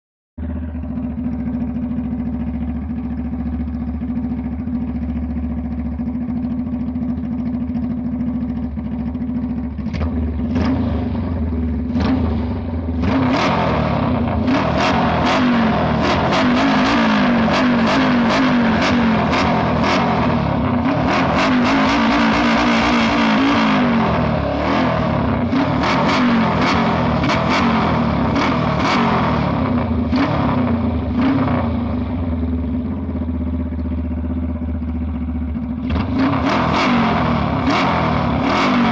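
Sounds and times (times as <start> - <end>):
motorcycle engine idling and revving: 0.4 - 38.9.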